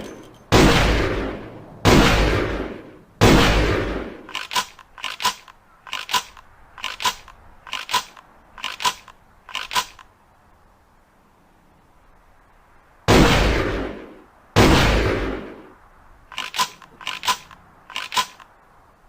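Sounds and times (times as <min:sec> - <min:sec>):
gun mechanism metallic clicks: 0:00.0 - 0:00.5, 0:04.3 - 0:10.1, 0:16.3 - 0:18.6
shotgun shot booming: 0:00.5 - 0:04.3, 0:13.1 - 0:15.6.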